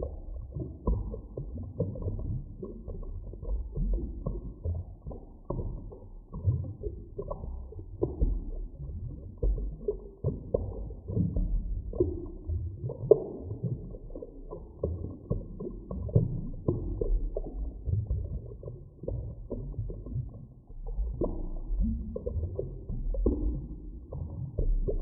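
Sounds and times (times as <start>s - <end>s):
low underwater rumble: 0.0s - 25.0s
soft underwater clicks and knocks: 0.0s - 25.0s.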